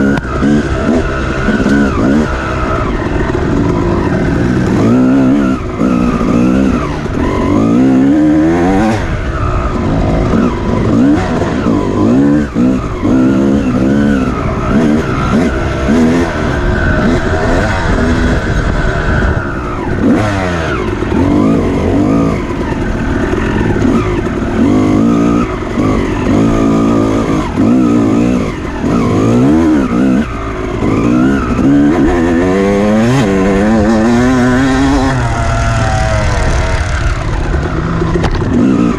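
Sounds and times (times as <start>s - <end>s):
dirt bike engine revving: 0.0s - 38.9s.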